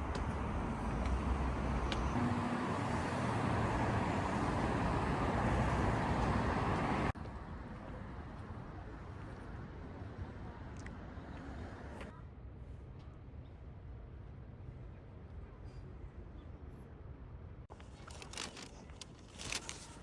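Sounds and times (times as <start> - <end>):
road traffic noise: 0.0 - 12.1.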